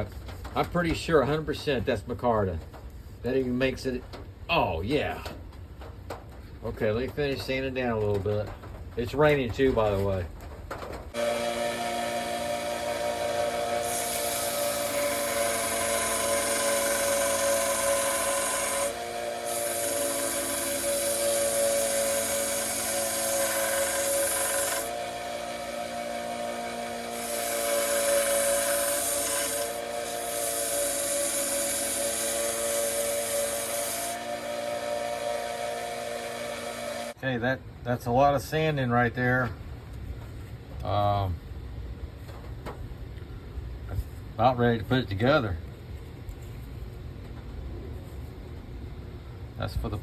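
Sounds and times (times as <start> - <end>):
electric sander motor running: 11.2 - 19.6.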